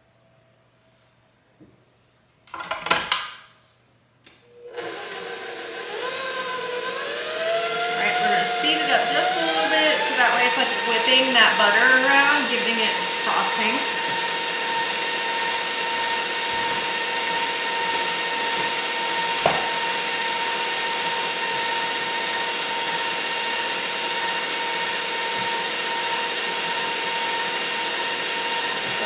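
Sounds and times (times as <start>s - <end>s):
stand mixer motor whine: 4.5s - 29.0s
sharp knock: 19.4s - 19.8s.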